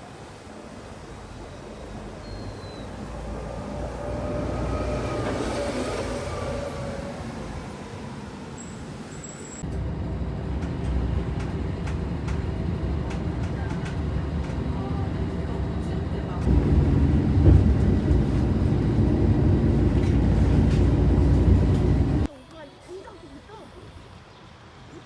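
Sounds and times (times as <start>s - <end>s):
train rumbling: 0.1s - 22.3s.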